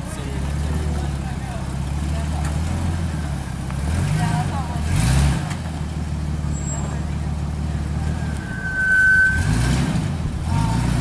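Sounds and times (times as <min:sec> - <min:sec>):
vehicle engine running: 0:00.0 - 0:11.0
short high-pitched squeal: 0:08.0 - 0:09.9.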